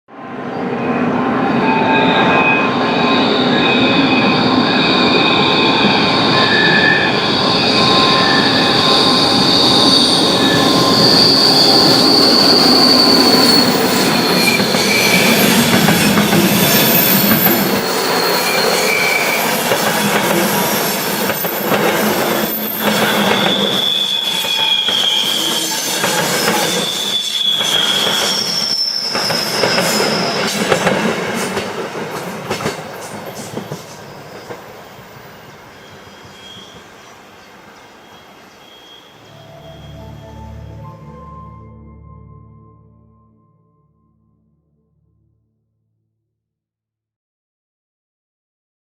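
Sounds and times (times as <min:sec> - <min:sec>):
train wheels squealing: 0:00.4 - 0:41.1
electric locomotive running: 0:01.2 - 0:41.2
clickety-clack of wheel knocks: 0:29.6 - 0:34.6.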